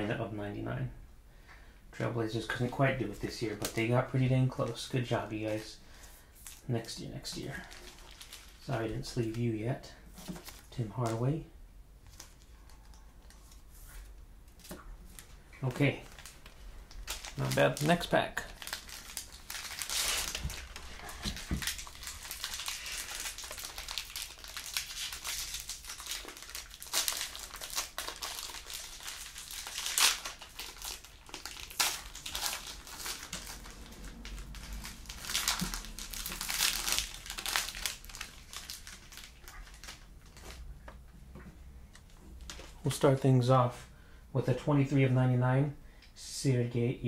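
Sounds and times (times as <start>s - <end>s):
plastic wrapper crinkling: 2.6s - 5.7s, 6.4s - 9.5s, 10.1s - 11.3s, 12.0s - 13.8s, 14.5s - 40.9s, 41.9s - 42.9s.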